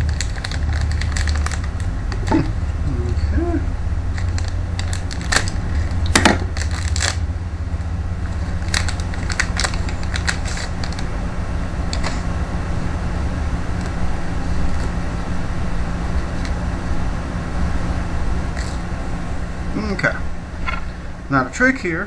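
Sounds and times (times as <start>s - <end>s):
plastic packaging crackling: 0.0s - 2.6s, 4.1s - 11.1s
steady low hum: 0.0s - 22.0s.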